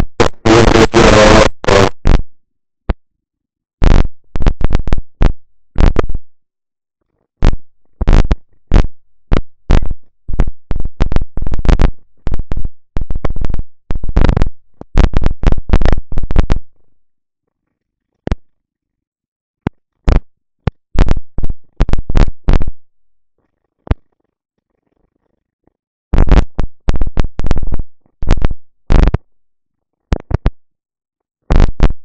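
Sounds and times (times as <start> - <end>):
microphone crackling static: 0.0 - 3.0, 3.8 - 6.4, 7.3 - 17.0, 19.7 - 25.4, 26.1 - 29.3, 30.1 - 30.6, 31.5 - 32.0.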